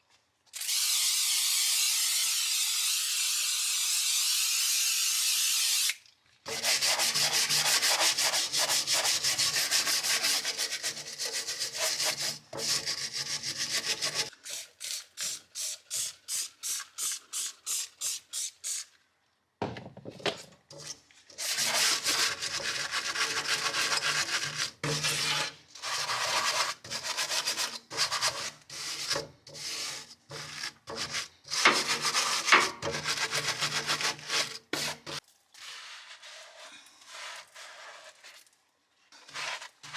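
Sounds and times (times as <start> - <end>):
scrubbing on hard surface: 6.5 - 14.3, 20.7 - 39.9.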